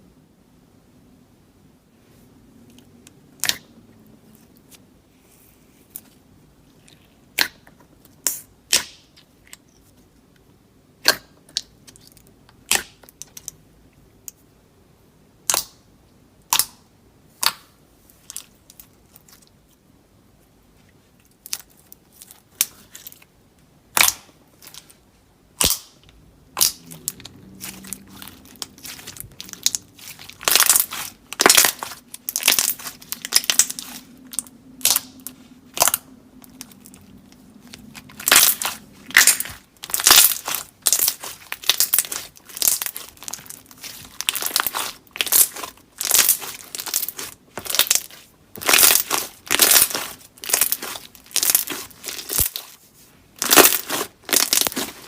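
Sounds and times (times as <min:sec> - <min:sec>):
slime popping and crackling: 0:03.4 - 0:03.7, 0:07.3 - 0:09.2, 0:11.0 - 0:13.5, 0:15.4 - 0:15.8, 0:23.9 - 0:52.8, 0:53.4 - 0:55.0.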